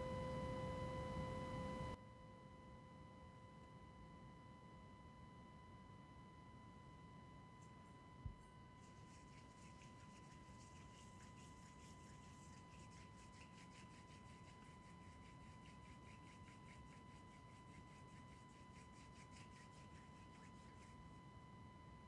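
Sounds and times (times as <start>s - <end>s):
singing bowl ringing tone: 0.0s - 9.2s
fast rubbing on singing bowl: 8.7s - 21.6s.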